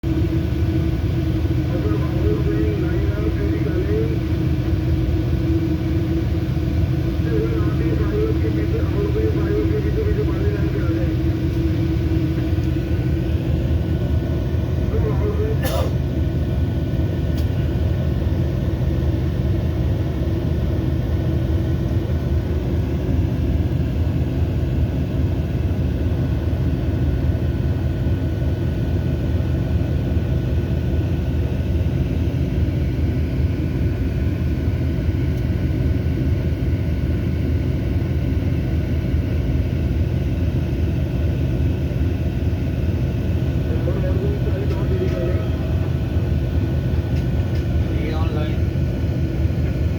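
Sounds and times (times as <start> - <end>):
diesel locomotive rumble: 0.0 - 49.9
faint constant whine: 0.1 - 49.9.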